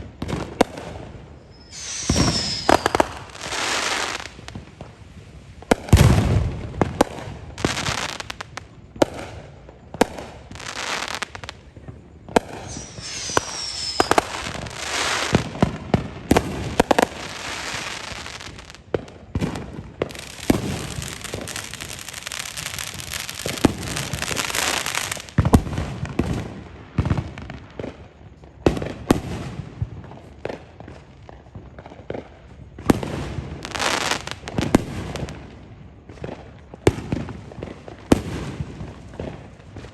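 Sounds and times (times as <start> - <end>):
firework crackling hiss: 0.0 - 28.2, 32.0 - 39.9
firework bangs and pops: 0.0 - 39.9
falling firework whistle: 0.2 - 5.0, 10.0 - 18.8, 19.4 - 26.4.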